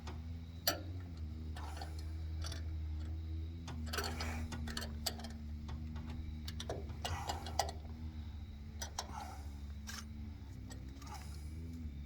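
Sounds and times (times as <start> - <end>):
steady low hum: 0.0 - 12.0
wrench clicking and scraping metal: 3.8 - 5.4.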